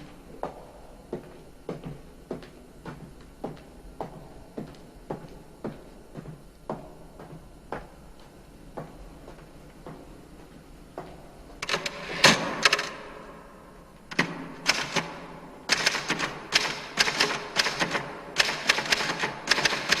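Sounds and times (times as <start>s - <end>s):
typewriter typing: 11.6s - 13.1s, 14.1s - 20.0s.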